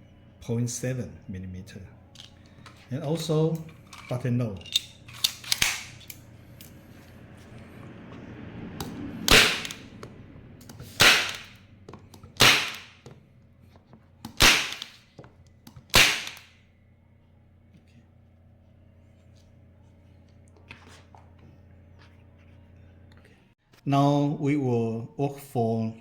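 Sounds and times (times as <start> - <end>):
staple gun firing: 9.3 - 9.9, 10.8 - 11.6, 12.4 - 13.0, 14.3 - 15.0, 15.9 - 16.5.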